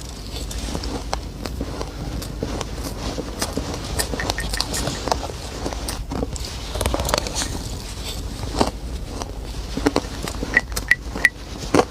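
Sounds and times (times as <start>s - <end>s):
ice being chewed: 0.0s - 11.9s.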